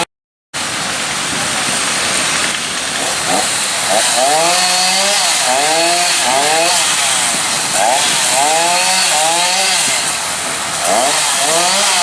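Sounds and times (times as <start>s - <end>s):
steady hiss: 0.6s - 5.4s
chainsaw running: 1.2s - 12.0s.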